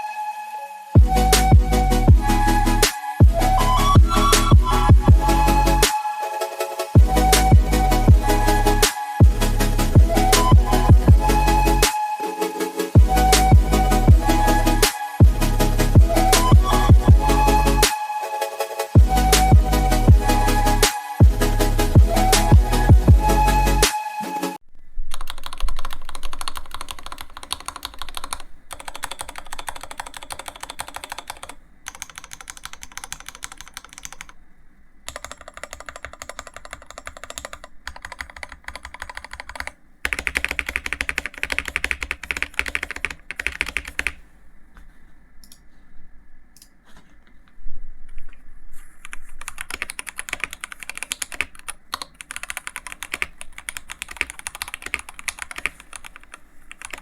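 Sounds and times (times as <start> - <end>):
mechanical keyboard typing: 25.1 - 34.4, 35.1 - 44.2, 49.1 - 57.0.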